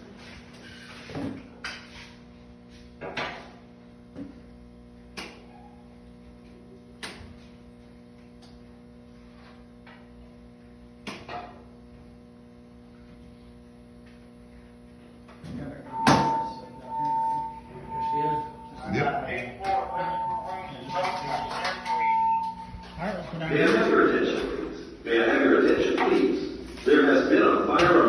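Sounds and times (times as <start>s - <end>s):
electrical mains hum: 0.0s - 28.0s
high fire alarm tone: 15.8s - 26.0s.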